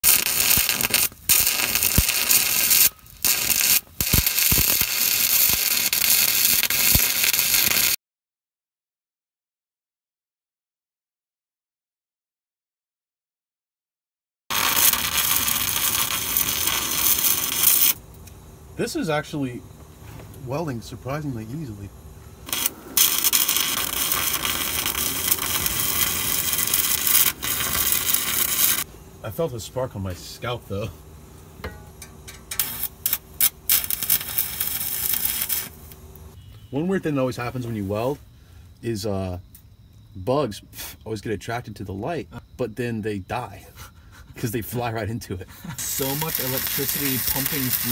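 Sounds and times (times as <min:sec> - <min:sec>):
welding arc crackling and sizzling: 0:00.0 - 0:08.0, 0:14.5 - 0:36.4, 0:45.7 - 0:47.9.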